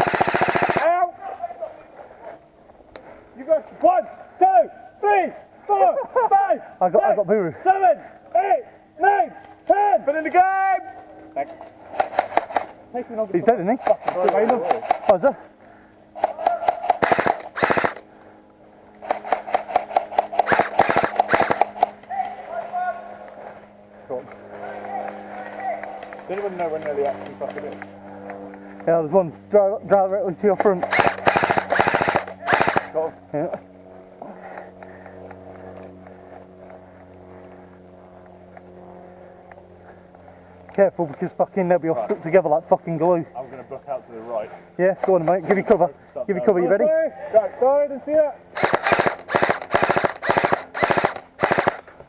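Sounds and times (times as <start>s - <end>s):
motor whine: 0.0s - 0.8s, 13.8s - 22.1s, 30.5s - 40.7s, 48.4s - 52.0s
airsoft gun firing full auto: 0.0s - 0.9s, 12.0s - 12.7s, 13.8s - 15.2s, 16.2s - 18.0s, 19.0s - 22.0s, 30.6s - 33.0s, 48.5s - 51.9s
steady low hum: 0.0s - 52.0s
faint ticks and rustles: 23.2s - 28.9s.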